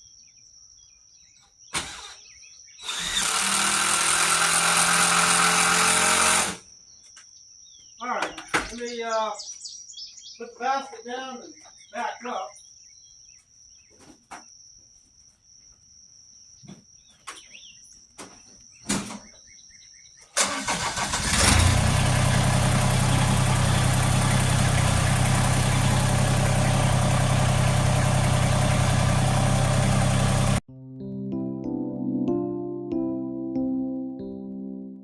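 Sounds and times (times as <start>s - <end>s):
engine starting and running: 1.8s - 6.6s, 20.4s - 30.6s.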